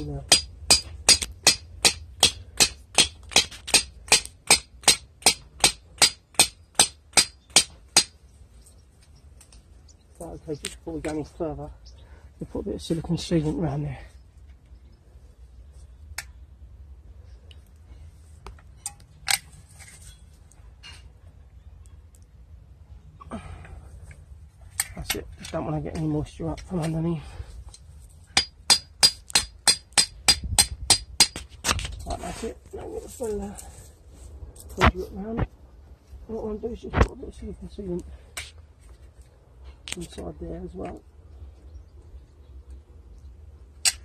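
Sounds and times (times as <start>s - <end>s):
hammer striking metal rod: 0.3s - 8.2s, 28.4s - 31.4s.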